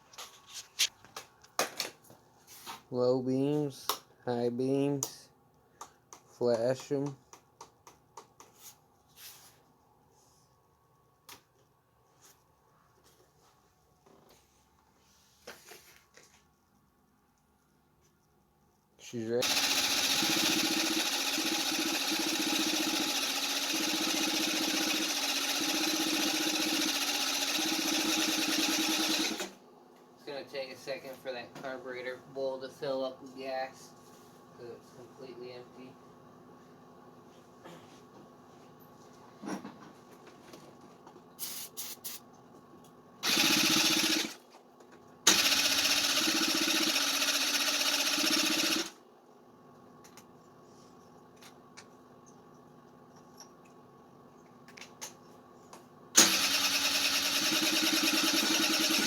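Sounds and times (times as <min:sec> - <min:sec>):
electric starter cranking engine: 0:19.4 - 0:29.6, 0:43.2 - 0:44.4, 0:45.3 - 0:49.0, 0:56.2 - 0:59.0.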